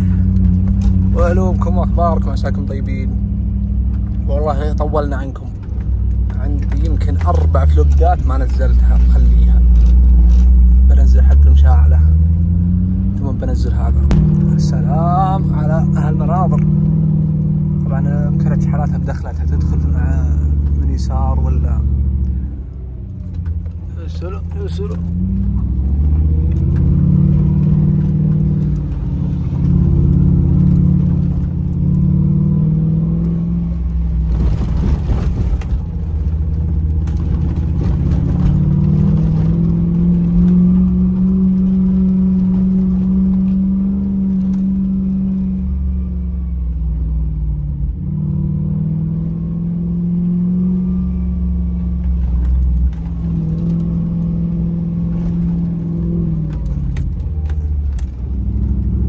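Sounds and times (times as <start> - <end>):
car engine revving: 0.0 - 59.0
knocks and rattles: 14.1 - 17.0, 33.8 - 44.9.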